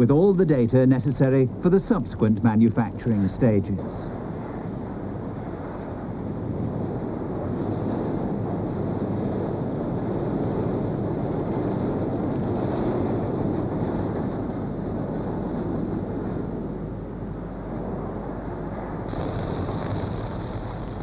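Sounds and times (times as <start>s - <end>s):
production-line machinery rumble: 19.1s - 21.0s.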